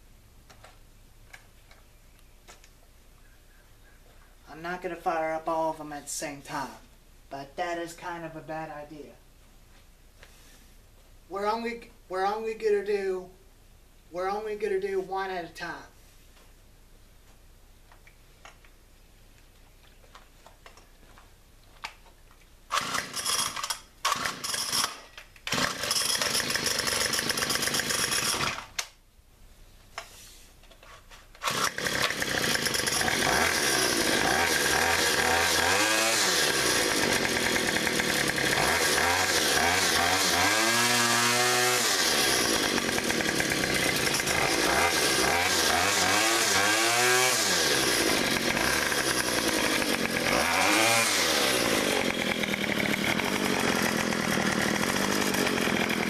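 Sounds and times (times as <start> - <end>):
two-stroke engine starting and revving: 22.7 - 28.7, 31.4 - 56.0.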